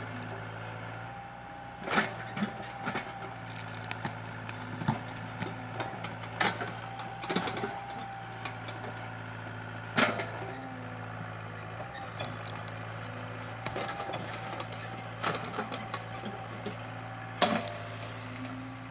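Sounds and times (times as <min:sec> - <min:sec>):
diesel engine running: 0:00.0 - 0:18.9.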